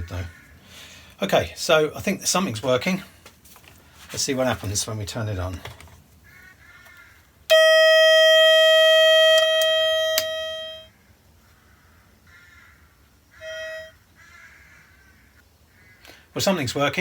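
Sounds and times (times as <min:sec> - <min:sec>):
metal detector electronic tone: 0:07.5 - 0:10.9, 0:13.4 - 0:14.0
short beep: 0:07.5 - 0:10.9, 0:13.4 - 0:14.0.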